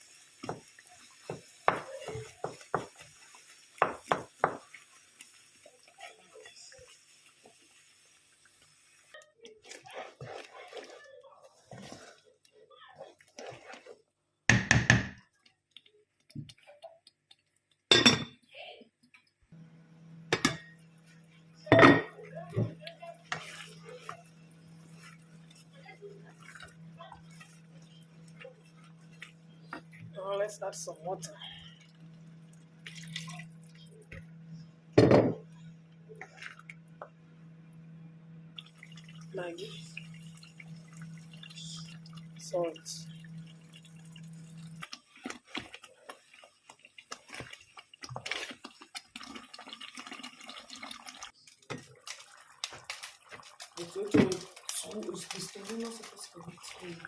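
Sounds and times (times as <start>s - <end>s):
utensils clinking against pots: 17.9s - 18.4s, 20.3s - 20.8s, 21.7s - 24.2s.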